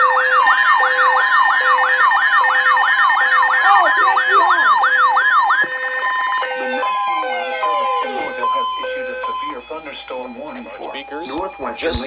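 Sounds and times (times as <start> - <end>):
electronic siren yelping: 0.0 - 12.0
low beeping tone: 5.6 - 12.0.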